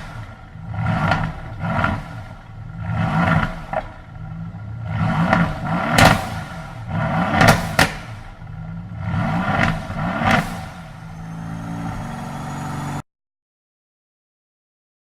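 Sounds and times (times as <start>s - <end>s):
exhaust pops and crackles: 0.0s - 11.1s
car engine revving: 0.0s - 13.0s.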